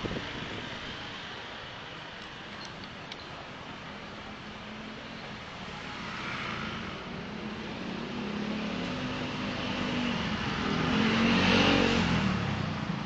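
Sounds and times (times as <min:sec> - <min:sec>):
vehicle engine passing by: 0:05.7 - 0:13.0.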